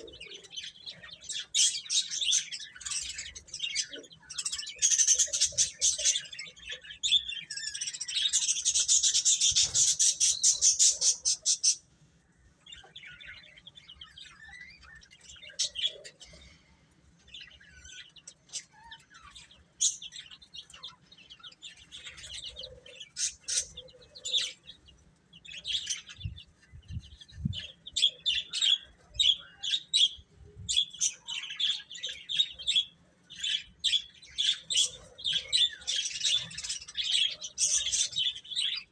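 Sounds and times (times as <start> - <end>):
baby chicks peeping: 0.0 - 38.9.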